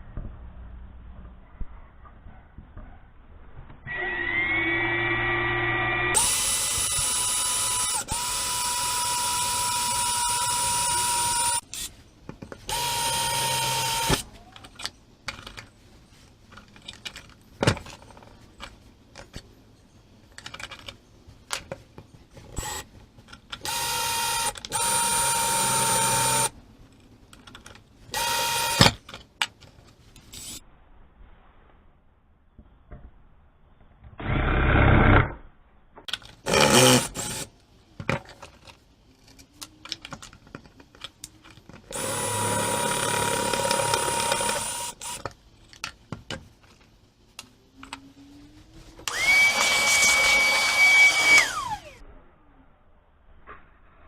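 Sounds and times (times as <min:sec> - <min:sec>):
electric drill whining: 0:03.9 - 0:11.6, 0:12.7 - 0:14.2, 0:23.6 - 0:26.5, 0:28.2 - 0:29.0, 0:41.9 - 0:45.2, 0:49.0 - 0:52.0.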